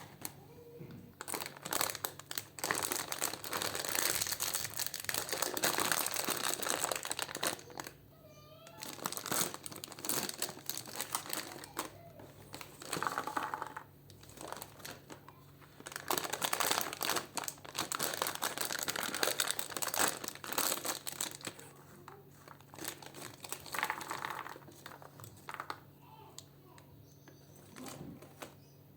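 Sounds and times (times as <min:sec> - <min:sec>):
plastic wrappers crinkling: 0:00.0 - 0:26.5, 0:27.6 - 0:28.6.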